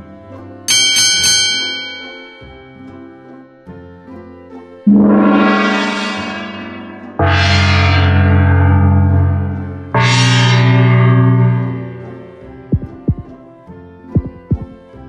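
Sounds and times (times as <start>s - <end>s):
comedic gong crash: 4.9s - 13.3s.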